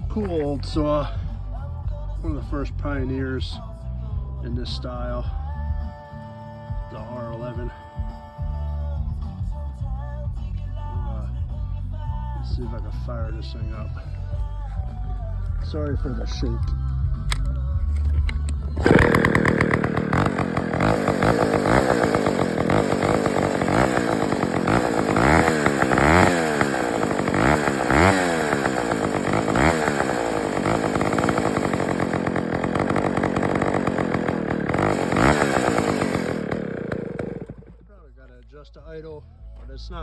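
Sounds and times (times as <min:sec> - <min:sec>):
chainsaw engine revving: 0:18.6 - 0:37.9.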